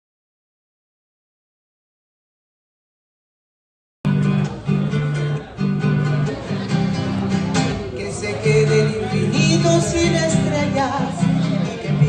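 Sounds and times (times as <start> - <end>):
acoustic guitar strumming: 4.1 - 12.0.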